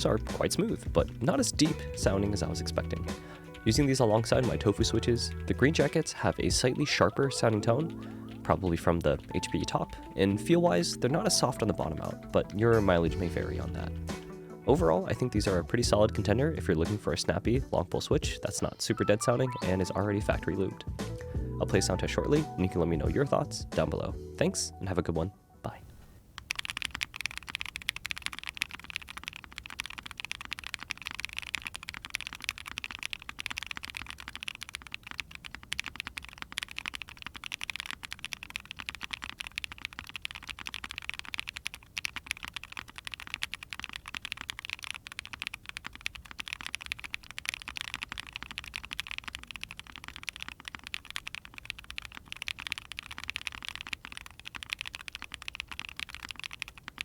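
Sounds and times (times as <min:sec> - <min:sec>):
fast typing on mechanical keyboard: 0:00.0 - 0:14.2, 0:26.4 - 0:57.0.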